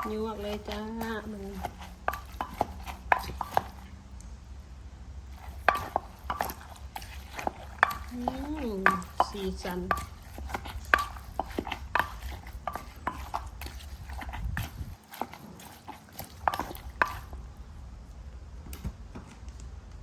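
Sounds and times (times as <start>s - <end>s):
utensils clinking in a mortar: 0.0s - 3.9s, 5.3s - 17.4s.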